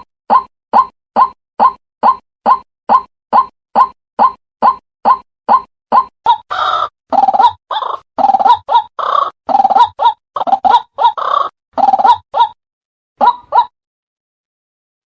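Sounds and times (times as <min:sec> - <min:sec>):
waterhen calling: 0:06.3 - 0:12.6.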